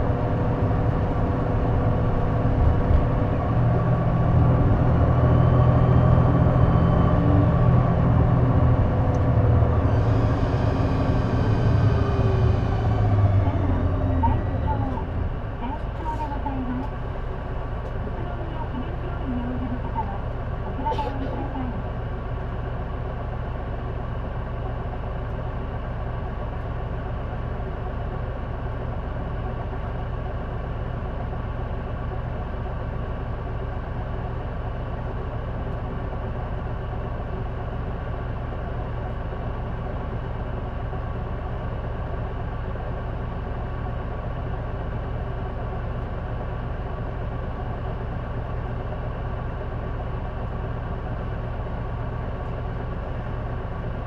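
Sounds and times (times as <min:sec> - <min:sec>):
bus diesel engine running: 0:00.0 - 0:54.0.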